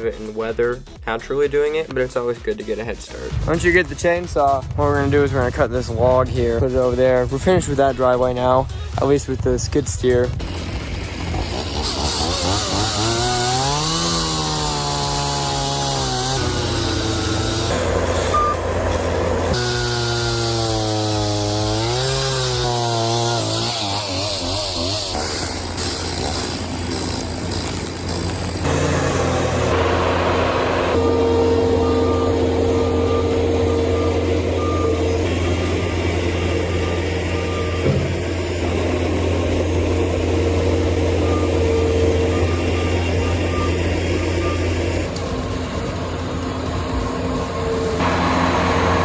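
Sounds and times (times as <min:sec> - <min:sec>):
skid steer engine running: 0:04.8 - 0:49.0
backup alarm beeping: 0:18.3 - 0:18.7, 0:31.0 - 0:45.1.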